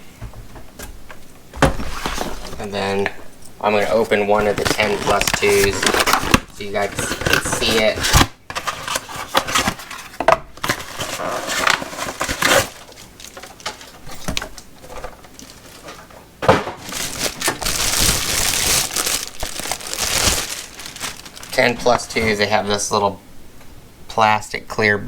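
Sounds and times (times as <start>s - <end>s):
packaging crinkling: 3.7s - 23.0s.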